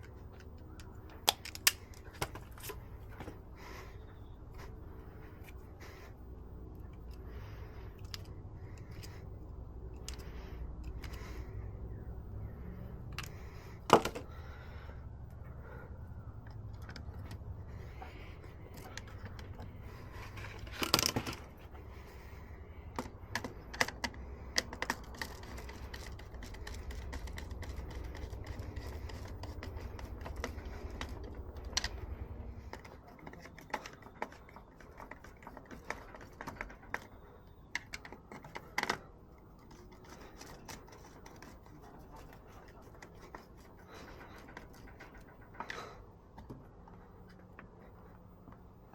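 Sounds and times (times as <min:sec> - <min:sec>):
steady low hum: 0:00.0 - 0:48.9
hand tools clicking and tapping: 0:22.9 - 0:47.8.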